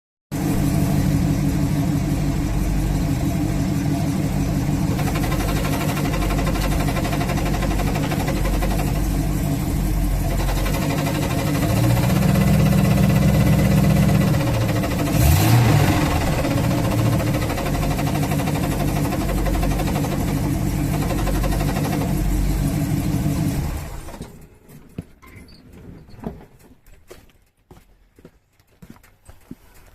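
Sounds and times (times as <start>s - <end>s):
engine revving: 0.4s - 24.4s
car engine idling: 0.4s - 24.5s
clutch noise: 4.9s - 9.2s, 10.2s - 22.4s.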